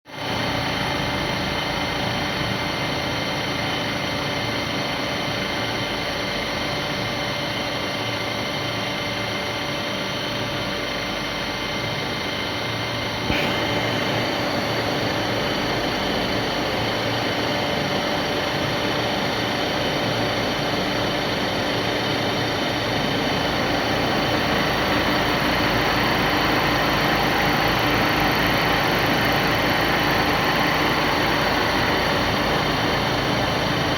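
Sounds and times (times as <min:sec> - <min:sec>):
milling machine running: 0:10.5 - 0:33.9.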